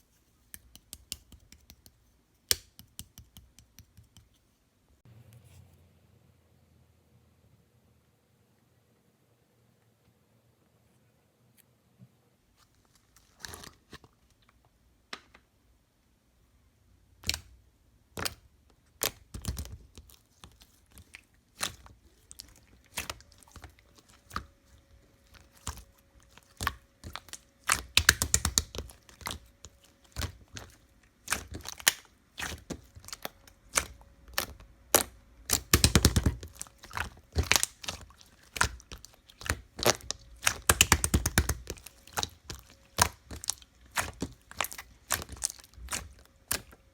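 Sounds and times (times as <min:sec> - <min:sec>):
slime popping and crackling: 0:19.0 - 0:20.1, 0:21.0 - 0:46.9.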